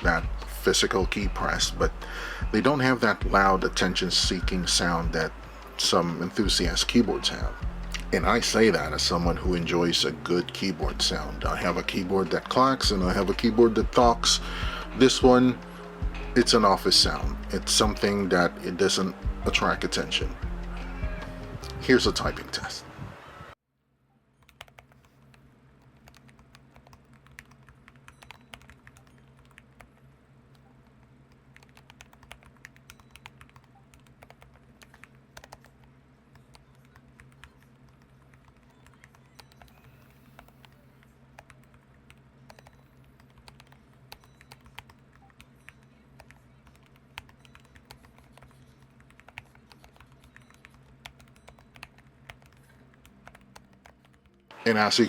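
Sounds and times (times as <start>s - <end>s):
keyboard typing clicks: 24.4s - 25.3s, 26.0s - 31.0s, 31.6s - 40.8s, 41.4s - 54.4s.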